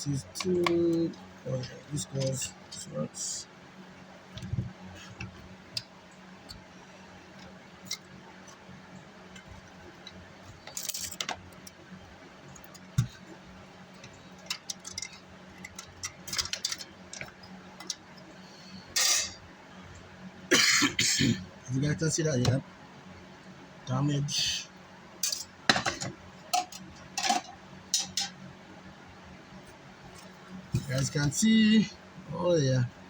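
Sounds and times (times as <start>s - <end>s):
small metal parts clinking: 10.6s - 11.4s, 14.4s - 18.0s.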